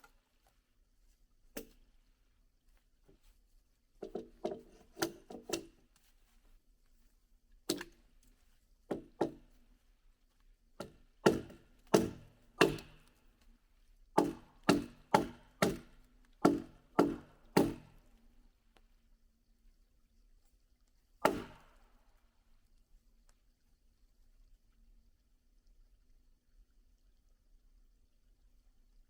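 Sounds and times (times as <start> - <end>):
wood being chopped: 10.8 - 13.1, 14.2 - 18.0, 21.2 - 21.8.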